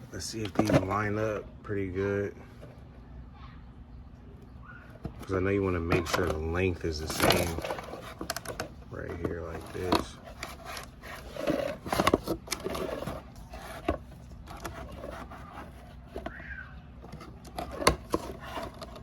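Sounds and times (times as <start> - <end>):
metal parts clicking and scraping: 5.9 - 16.3, 17.0 - 19.0.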